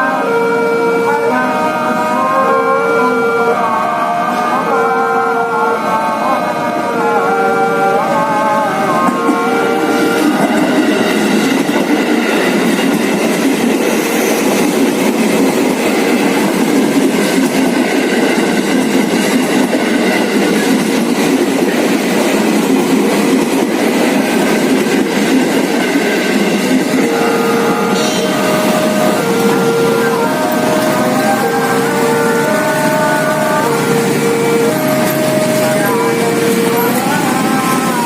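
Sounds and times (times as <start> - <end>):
train wheels on rails: 8.2 - 38.0.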